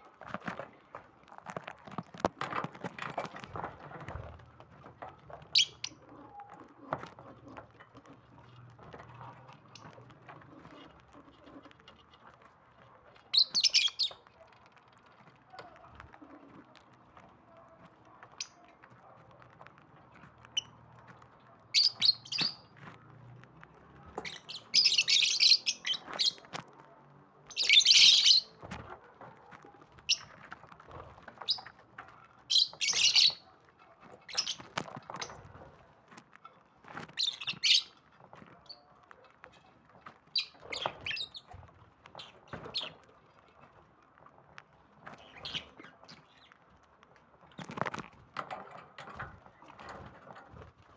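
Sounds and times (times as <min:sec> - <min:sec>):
lovebirds chirping and calling: 0:05.4 - 0:09.0, 0:13.3 - 0:14.3, 0:21.7 - 0:22.8, 0:24.1 - 0:26.5, 0:27.4 - 0:28.6, 0:30.0 - 0:30.4, 0:31.3 - 0:31.8, 0:32.4 - 0:33.5, 0:34.2 - 0:35.5, 0:37.1 - 0:38.0, 0:40.3 - 0:43.1, 0:45.1 - 0:46.6.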